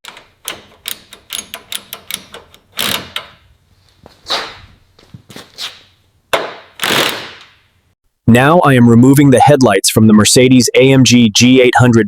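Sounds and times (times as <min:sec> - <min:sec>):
sharp metallic clicks: 0:00.0 - 0:03.4
metal clanks with rattling: 0:00.0 - 0:03.5.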